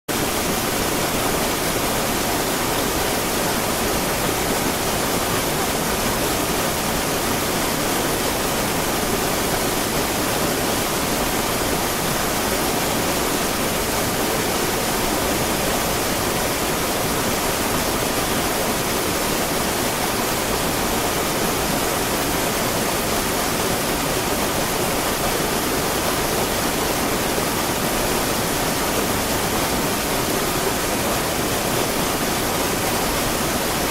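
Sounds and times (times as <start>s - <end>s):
river water flowing: 0.1s - 33.9s.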